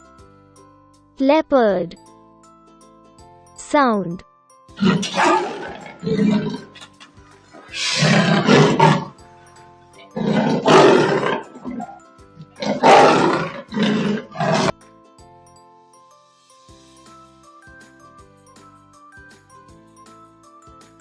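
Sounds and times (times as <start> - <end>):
light background music: 0.0 - 21.0
leopard rasping calls: 4.8 - 9.2, 9.9 - 14.8.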